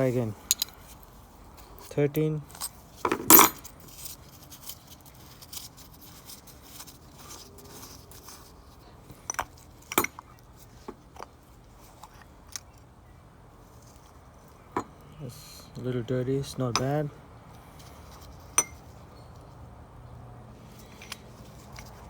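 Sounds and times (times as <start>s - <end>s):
clicks and scrapes of hand tools: 20.7s - 22.0s.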